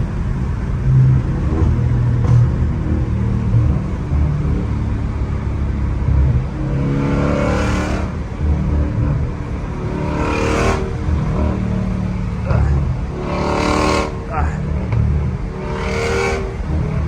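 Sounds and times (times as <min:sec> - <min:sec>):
vee eight exhaust rumbling: 0:00.0 - 0:17.0.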